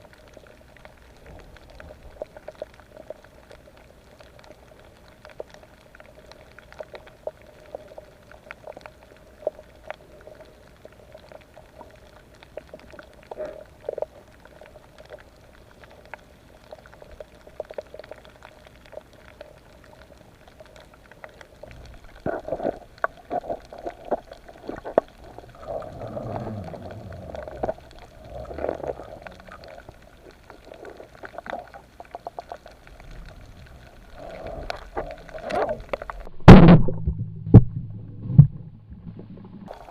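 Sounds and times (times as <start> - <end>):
air bubbles gurgling: 0.0 - 39.9
steady underwater hum: 0.0 - 39.9
underwater clicks and crackles: 0.0 - 39.9.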